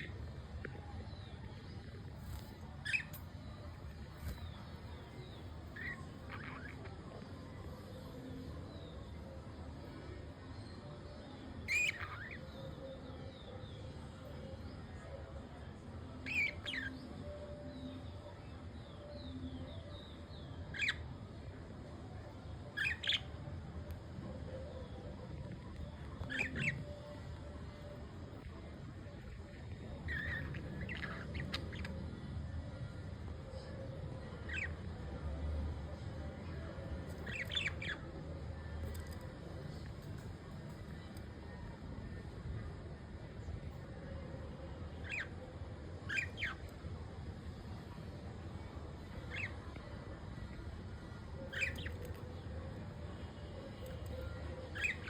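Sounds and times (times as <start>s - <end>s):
faint bird chirps: 0.0s - 15.1s, 15.7s - 21.6s, 22.2s - 35.0s, 36.5s - 39.8s, 43.4s - 47.6s, 49.0s - 52.4s, 53.2s - 55.0s
budgerigars chirping and squawking: 11.7s - 12.4s, 26.2s - 26.8s, 30.1s - 32.0s, 34.5s - 34.7s, 37.3s - 38.0s, 45.0s - 45.3s, 46.1s - 46.6s, 49.3s - 49.5s, 54.8s - 55.0s.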